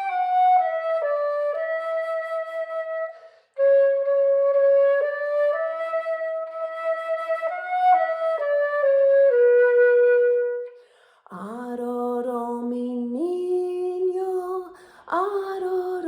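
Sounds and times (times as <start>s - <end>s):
solo flute melody: 0.0s - 10.8s.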